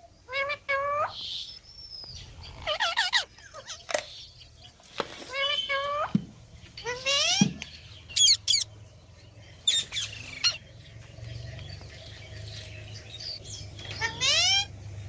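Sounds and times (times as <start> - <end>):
parakeets squawking: 0.3 - 1.5, 2.2 - 4.3, 5.2 - 6.1, 6.7 - 8.8, 9.5 - 14.7.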